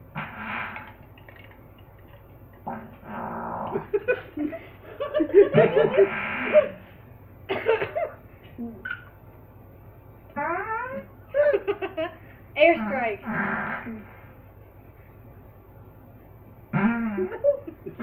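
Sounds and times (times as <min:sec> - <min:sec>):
fart sound effects: 0:00.1 - 0:01.1, 0:16.7 - 0:17.4
people laughing: 0:03.7 - 0:06.8, 0:17.0 - 0:18.0.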